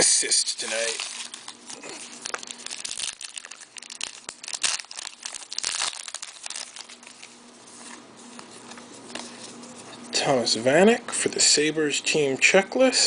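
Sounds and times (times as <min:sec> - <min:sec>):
foil wrapper crinkling and tearing: 0:00.1 - 0:07.8.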